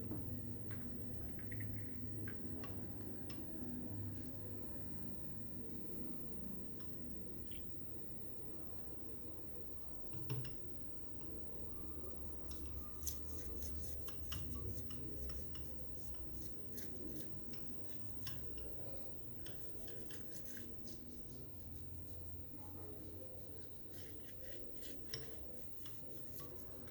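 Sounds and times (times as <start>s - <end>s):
scratchy clicks and scrapes: 12.4s - 26.9s.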